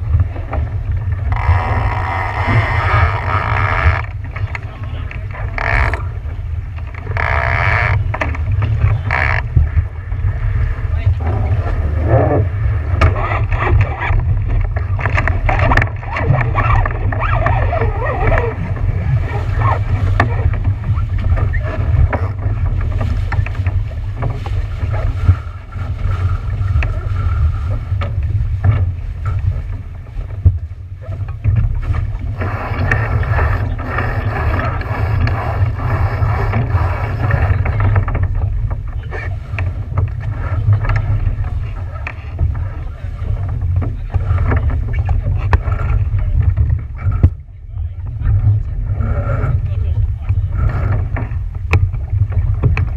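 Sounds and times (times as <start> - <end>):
boat moving through water: 0.0 - 52.9
wind buffeting microphone: 0.0 - 52.9
muffled voices: 4.3 - 6.1, 10.9 - 12.5, 40.3 - 51.4.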